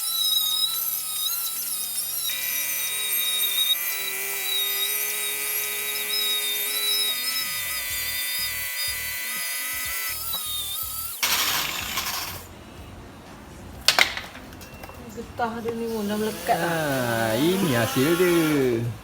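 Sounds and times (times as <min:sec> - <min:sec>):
angle grinder whining: 0:00.0 - 0:12.5, 0:15.7 - 0:19.0
background music: 0:07.3 - 0:19.0.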